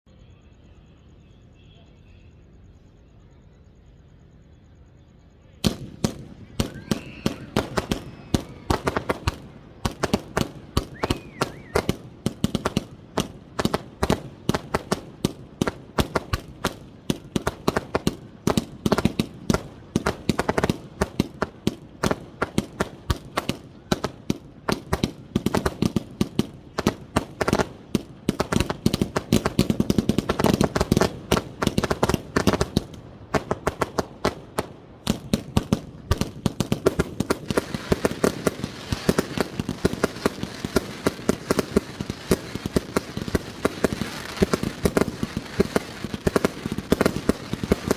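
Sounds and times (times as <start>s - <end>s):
fireworks bangs: 5.5s - 47.9s.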